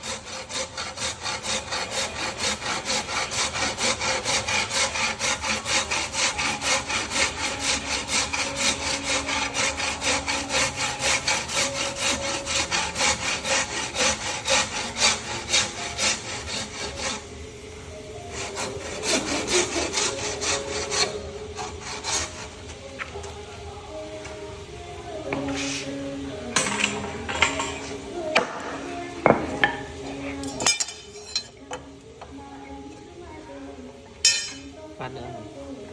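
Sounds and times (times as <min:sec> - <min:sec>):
hand saw cutting wood: 0:00.0 - 0:17.2, 0:18.3 - 0:22.6.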